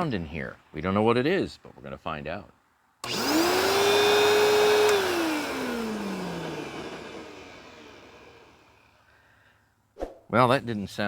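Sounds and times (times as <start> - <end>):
vacuum motor whine: 3.0 - 9.0.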